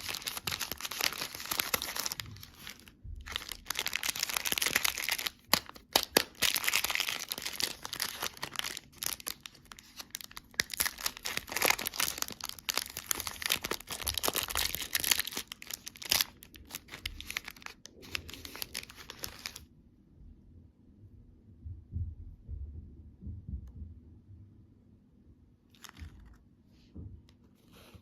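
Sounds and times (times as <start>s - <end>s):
packaging tearing and crinkling: 0.0s - 19.6s
soft low thuds: 21.5s - 24.6s.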